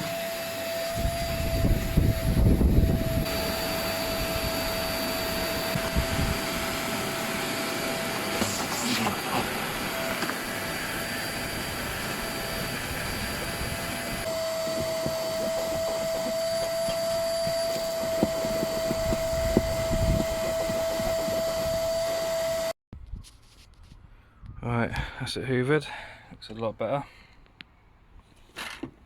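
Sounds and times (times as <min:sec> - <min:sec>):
vacuum cleaner whining: 0:00.0 - 0:22.8
vacuum nozzle knocking on surfaces: 0:14.4 - 0:21.5.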